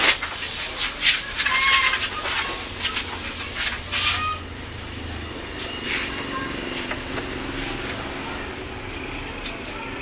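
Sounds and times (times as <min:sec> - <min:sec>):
spray paint can hissing: 0:00.0 - 0:04.4.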